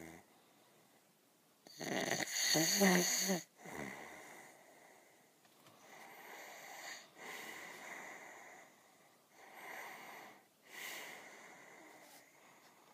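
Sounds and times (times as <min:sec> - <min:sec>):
person snoring: 0:01.7 - 0:04.6.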